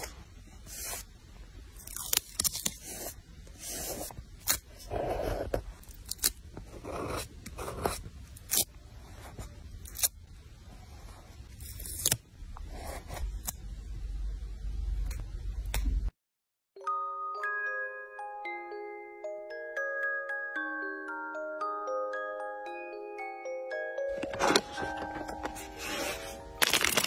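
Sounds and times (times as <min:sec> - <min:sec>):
paper rustling and scraping: 0:24.1 - 0:27.0.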